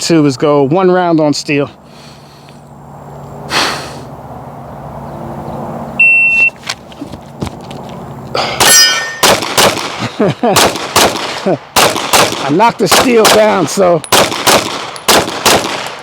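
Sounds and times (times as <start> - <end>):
shot timer beep: 6.0 - 6.6
rapid pistol shots: 8.6 - 16.0.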